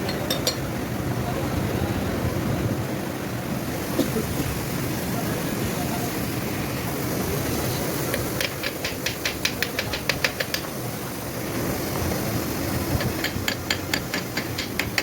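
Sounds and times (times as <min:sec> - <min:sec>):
low workshop noise: 0:00.0 - 0:15.0
hand tools clicking: 0:13.0 - 0:15.0.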